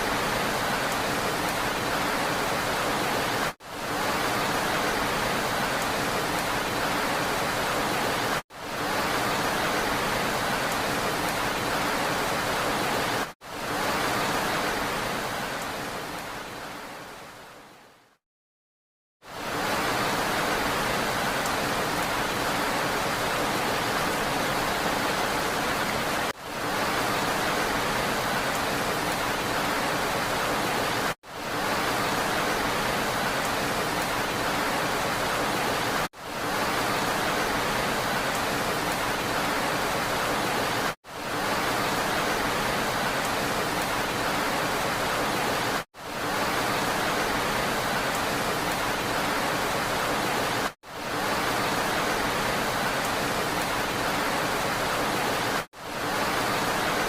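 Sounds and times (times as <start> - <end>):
rain hissing: 19.2 - 57.0.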